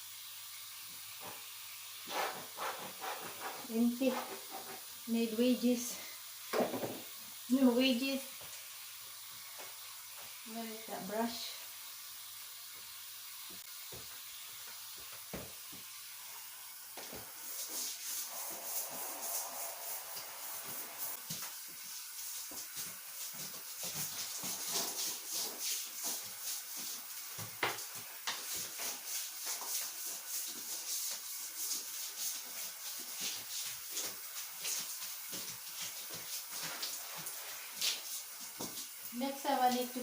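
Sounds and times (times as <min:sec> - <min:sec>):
stiff brush scrubbing: 0:02.0 - 0:04.9, 0:17.5 - 0:21.3, 0:22.2 - 0:27.0.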